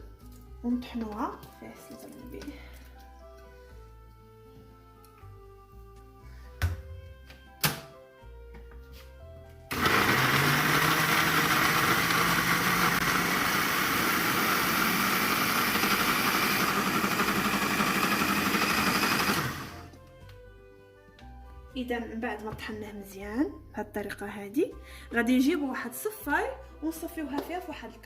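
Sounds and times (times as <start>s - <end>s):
electric blender running: 9.7s - 19.9s.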